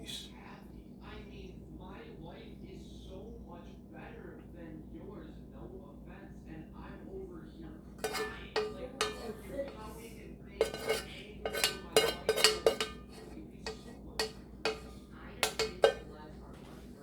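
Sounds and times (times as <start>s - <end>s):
spoon clinking against a dish: 7.9s - 16.7s.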